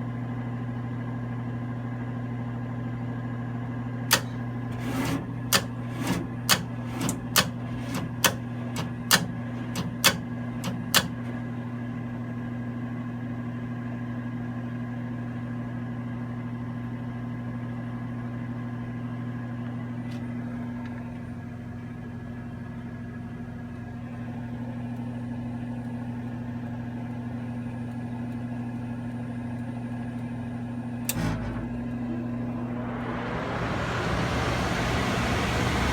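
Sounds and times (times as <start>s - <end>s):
furnace motor hum: 0.0s - 14.3s, 28.3s - 35.9s
furnace igniter clicking: 4.1s - 11.5s.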